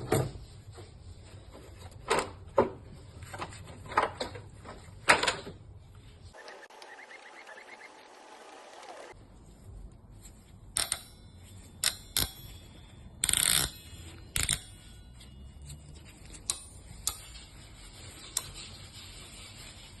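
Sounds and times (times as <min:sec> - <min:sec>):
metal scrape: 0:11.0 - 0:20.0.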